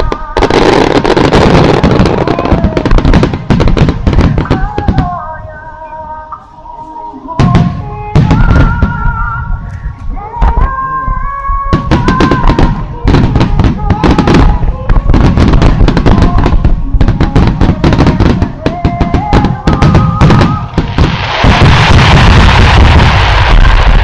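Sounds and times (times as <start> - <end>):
music: 4.2 - 20.9.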